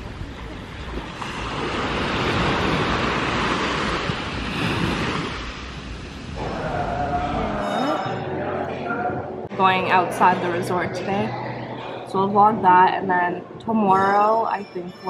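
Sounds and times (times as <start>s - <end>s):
ocean surf washing onto beach: 0.0s - 7.7s
wind rumbling on microphone: 0.0s - 9.5s.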